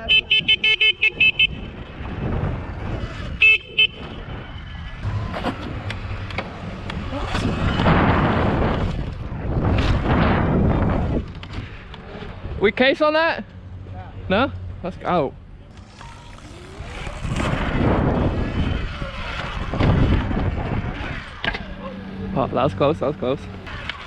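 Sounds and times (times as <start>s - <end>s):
dirt bike horn toots: 0.0s - 1.8s, 3.3s - 4.3s.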